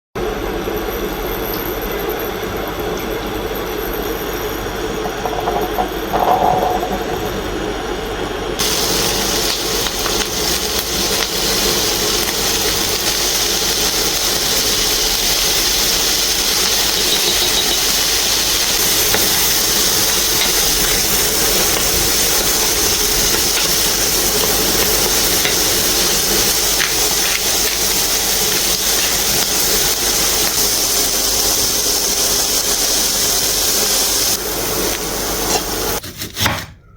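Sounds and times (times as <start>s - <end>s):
food sizzling in hot oil: 8.6s - 36.0s.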